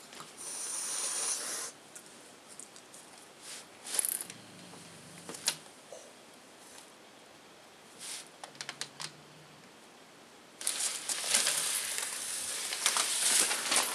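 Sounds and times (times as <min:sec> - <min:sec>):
stocking crinkling: 0:10.6 - 0:13.9.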